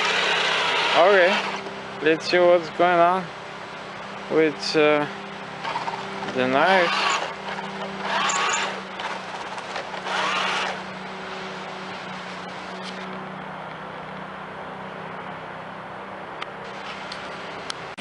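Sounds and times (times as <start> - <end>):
toy tank electric hum: 0.0 - 1.7, 5.6 - 13.2.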